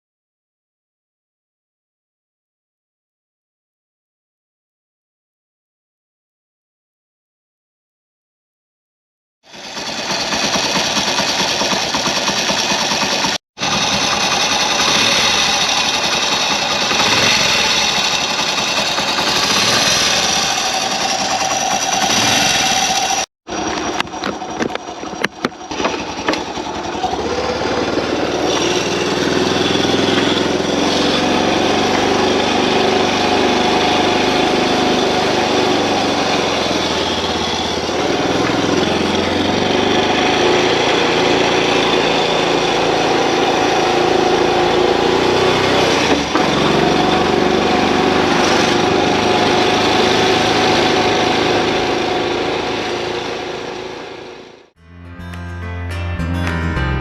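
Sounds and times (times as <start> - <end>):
motorcycle engine running: 9.5 - 54.7.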